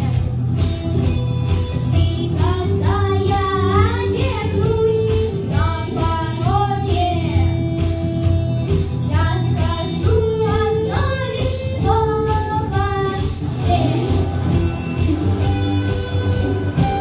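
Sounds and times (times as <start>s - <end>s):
guitar backing: 0.0s - 17.0s.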